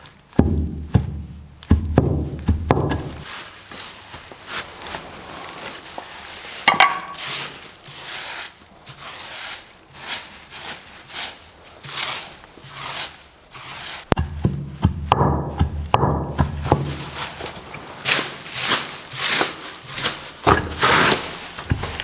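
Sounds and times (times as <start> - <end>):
footsteps through leaf litter: 0.0 - 14.9, 15.5 - 22.0
heavy thuds and rustling: 0.3 - 7.7, 13.9 - 22.0.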